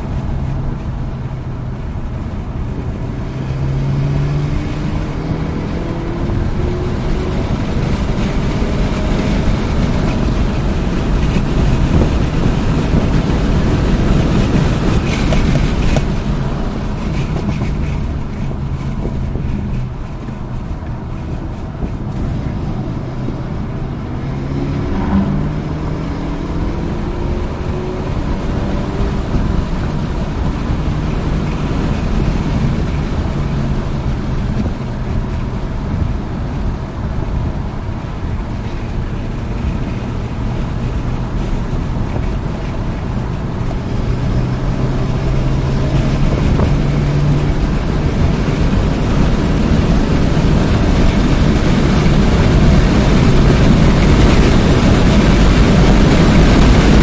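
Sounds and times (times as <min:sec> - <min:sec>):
road noise: 0:00.0 - 0:57.0
wind noise: 0:00.0 - 0:57.0
car engine revving hard: 0:22.1 - 0:38.4, 0:39.6 - 0:57.0.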